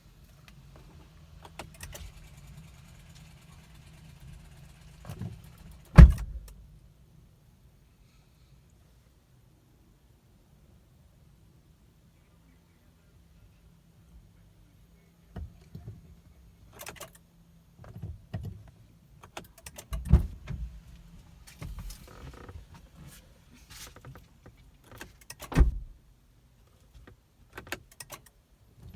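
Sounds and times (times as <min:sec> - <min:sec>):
clicks and knocks inside a car: 0:04.8 - 0:06.6, 0:15.3 - 0:26.0.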